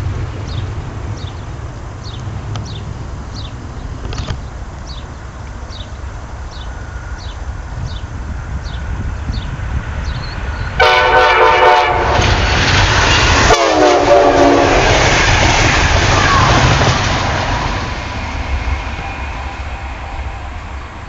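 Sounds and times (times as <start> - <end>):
passing train rushing: 0.0 - 21.0
train air horn: 10.8 - 12.4, 13.4 - 15.0, 18.8 - 20.9.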